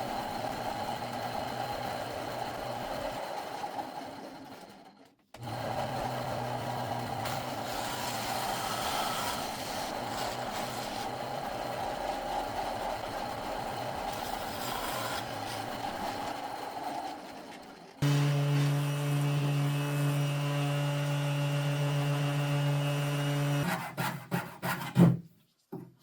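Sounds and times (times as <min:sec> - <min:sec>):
bandsaw cutting wood: 0:05.4 - 0:16.4, 0:18.0 - 0:25.0.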